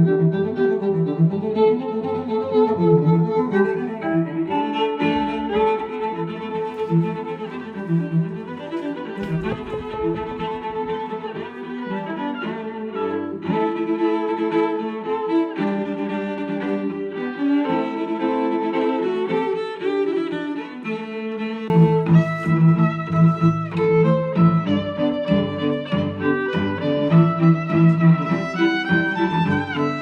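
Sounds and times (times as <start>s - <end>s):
violin and cello music: 0.0s - 30.0s.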